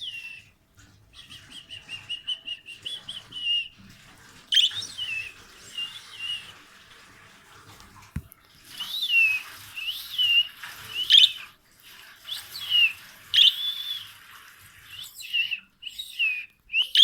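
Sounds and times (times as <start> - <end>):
small bird whistling: 0.0 - 0.5, 1.2 - 3.8, 4.5 - 6.6, 8.8 - 11.5, 12.3 - 14.2, 14.9 - 17.0.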